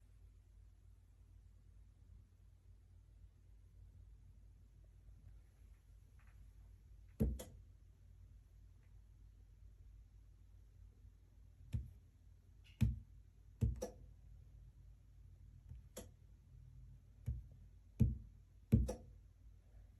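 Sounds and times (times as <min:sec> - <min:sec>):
faint low hum: 0:00.0 - 0:19.9
sharp clicks and knocks: 0:07.1 - 0:07.6, 0:12.6 - 0:14.0, 0:17.3 - 0:19.1.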